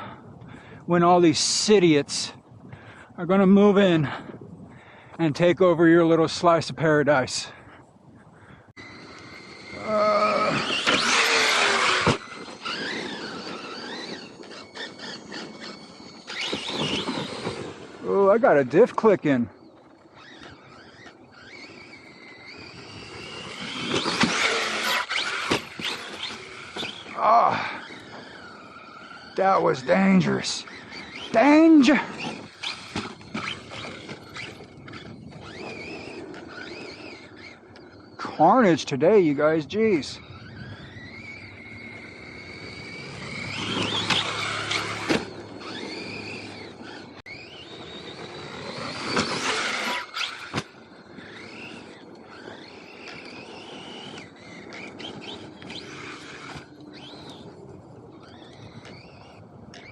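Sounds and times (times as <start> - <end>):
electric motor whining: 8.7 - 59.9.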